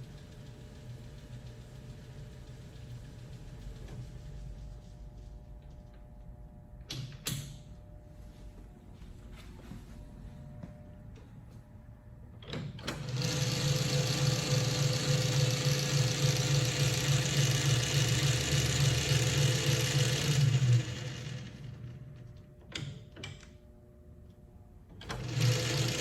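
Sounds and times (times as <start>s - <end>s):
lathe motor humming: 12.9s - 22.4s, 25.2s - 26.0s.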